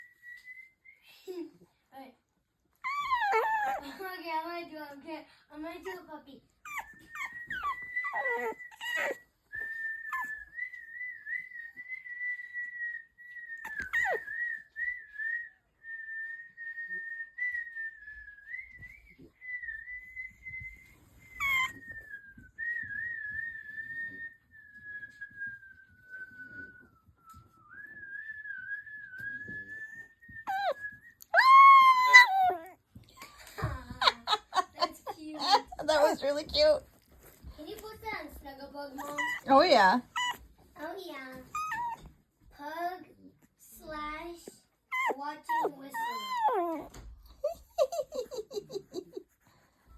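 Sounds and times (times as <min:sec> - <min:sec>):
person whistling a tune: 0:00.0 - 0:01.4, 0:07.0 - 0:32.5
puppy whimpering: 0:02.8 - 0:04.0, 0:06.6 - 0:10.4, 0:13.6 - 0:14.6, 0:21.2 - 0:22.1, 0:30.4 - 0:38.1, 0:38.9 - 0:40.5, 0:41.3 - 0:42.1, 0:44.4 - 0:49.2.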